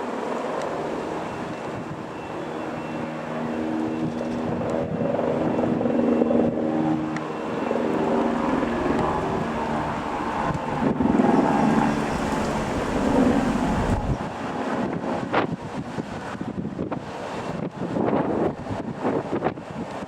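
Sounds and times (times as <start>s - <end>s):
helicopter turbines and rotor: 0.0s - 20.0s.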